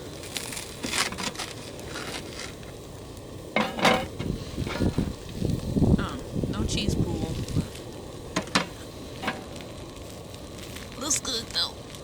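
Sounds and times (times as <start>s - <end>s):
metal utensil scraping a pan: 3.6s - 5.0s, 8.4s - 9.5s.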